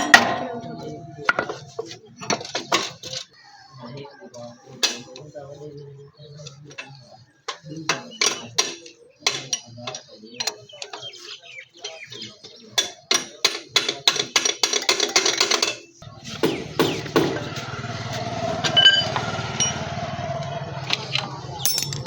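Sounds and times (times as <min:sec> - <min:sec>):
motorcycle engine running: 0:16.0 - 0:22.0
metallic clinks of hand tools: 0:21.6 - 0:22.0.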